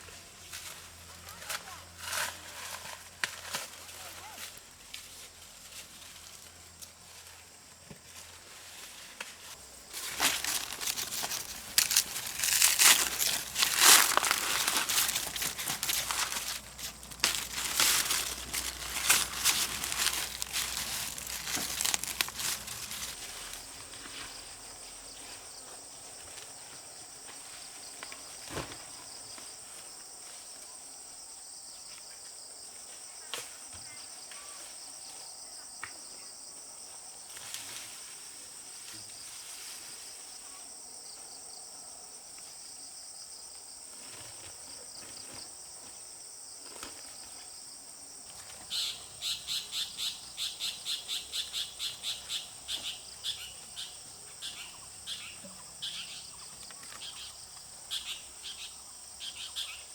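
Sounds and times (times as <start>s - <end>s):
corn husks crackling and tearing: 9.2s - 24.2s
insect trill: 9.7s - 26.7s.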